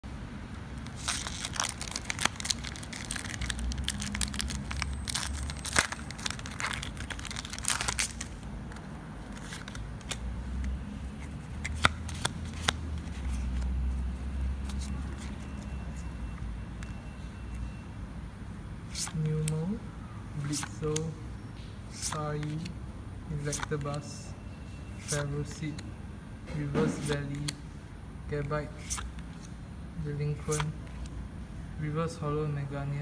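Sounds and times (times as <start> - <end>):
foil wrapper crinkling and tearing: 0.8 - 8.4.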